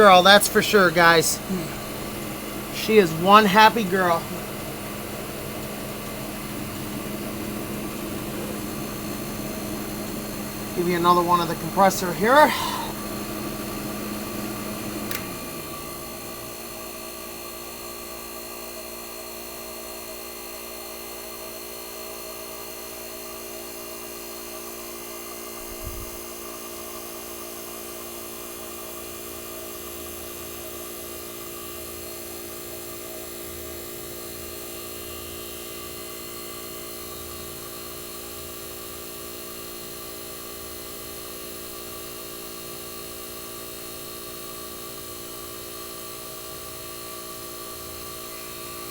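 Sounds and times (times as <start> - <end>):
air conditioner humming: 0.0 - 17.0, 25.6 - 26.3.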